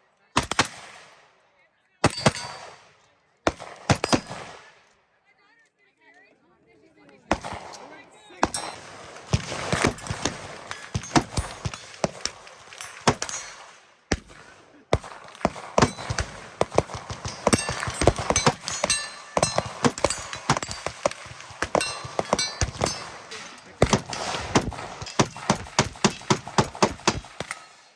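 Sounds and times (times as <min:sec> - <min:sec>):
rifle gunfire: 0:00.4 - 0:01.2, 0:02.0 - 0:02.9, 0:03.5 - 0:04.8, 0:07.3 - 0:27.9.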